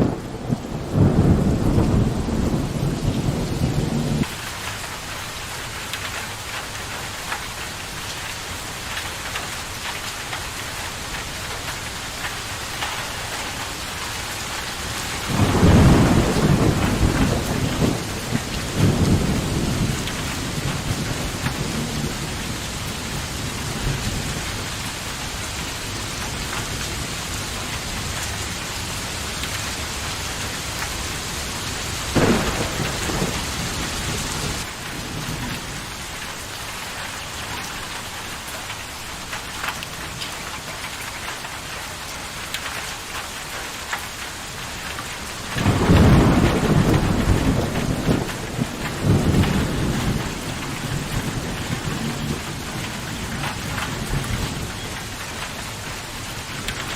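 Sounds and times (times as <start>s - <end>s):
thunder rumbling: 0.0s - 4.4s, 14.7s - 36.5s, 45.5s - 56.9s
heavy rain: 0.0s - 56.9s
thunder crack: 15.3s - 22.3s, 32.1s - 35.7s, 45.6s - 52.5s.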